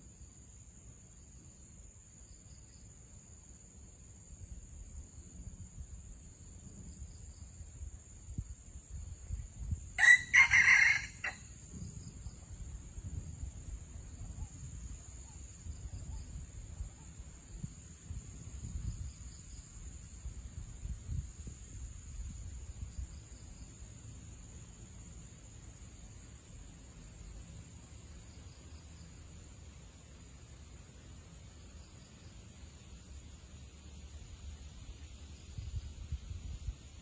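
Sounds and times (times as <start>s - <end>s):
high insect trill: 0.0s - 37.0s
rooster crowing: 10.0s - 11.5s.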